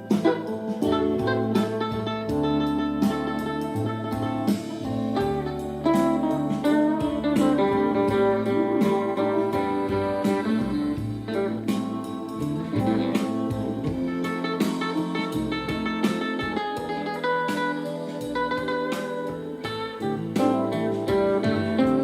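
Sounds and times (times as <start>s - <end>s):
guitar-led music on radio: 0.0s - 22.0s.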